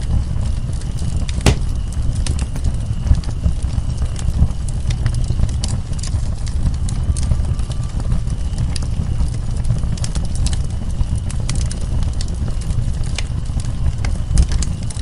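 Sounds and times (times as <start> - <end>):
wood fire crackling: 0.0 - 15.0
fire pops and snaps: 0.1 - 15.0.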